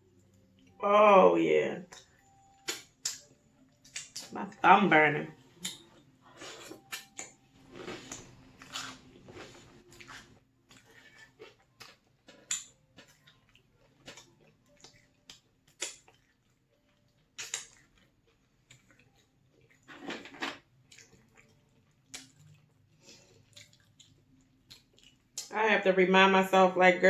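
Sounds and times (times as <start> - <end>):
chewing mouth smacks and clicks: 14.1 - 16.4, 17.3 - 19.1, 20.9 - 22.8, 23.4 - 25.5.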